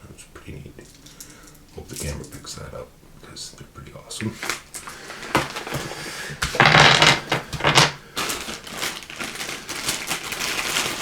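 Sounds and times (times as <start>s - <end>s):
packaging crinkling: 4.2s - 11.0s
game pieces clicking: 6.4s - 8.0s.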